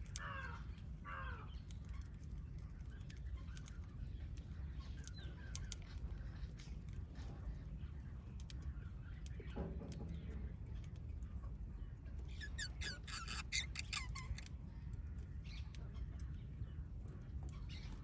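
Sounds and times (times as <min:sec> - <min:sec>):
parrots chirping: 0:12.3 - 0:14.5.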